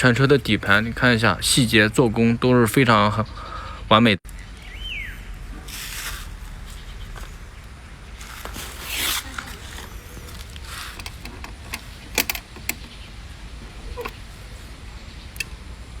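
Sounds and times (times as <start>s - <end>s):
rustling swishes: 8.2s - 11.0s
sharp clicks: 9.4s - 13.0s, 15.3s - 15.7s.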